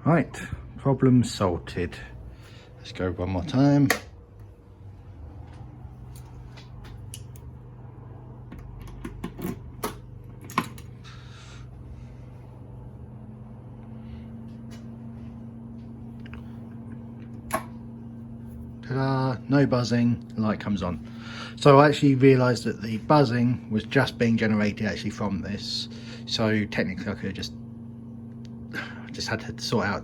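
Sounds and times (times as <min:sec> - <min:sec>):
low electrical hum: 0:00.0 - 0:30.0
second steady hum: 0:00.0 - 0:30.0
control panel switches clicking: 0:03.8 - 0:04.5.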